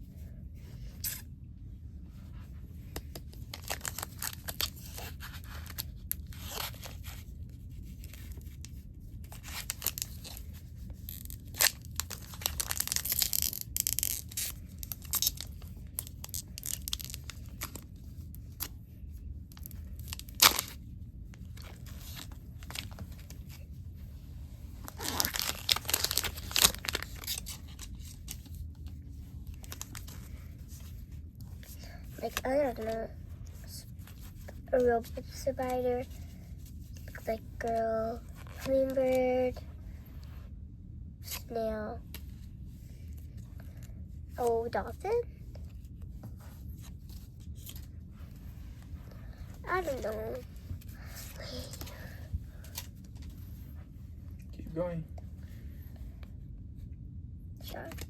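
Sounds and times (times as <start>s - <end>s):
foil wrapper crinkling and tearing: 3.4s - 7.2s, 9.2s - 17.9s, 19.5s - 20.8s, 21.5s - 23.6s, 24.8s - 28.6s, 29.5s - 30.8s.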